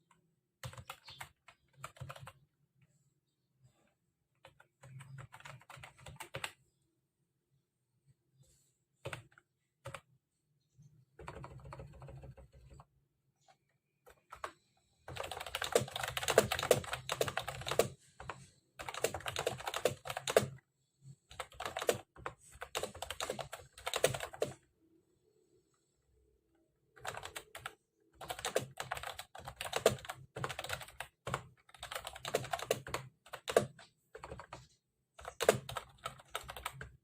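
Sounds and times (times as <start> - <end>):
fast keyboard typing clatter: 0.6 - 2.4, 4.5 - 6.5, 11.2 - 12.9, 14.1 - 20.6, 21.3 - 24.6, 27.0 - 37.0.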